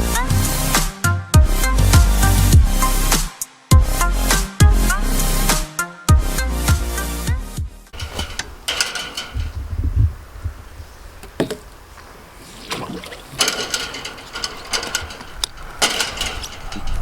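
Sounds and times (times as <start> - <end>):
music: 0.0 - 8.0
knocks and clatter: 8.0 - 10.6, 11.2 - 11.9, 12.7 - 17.0.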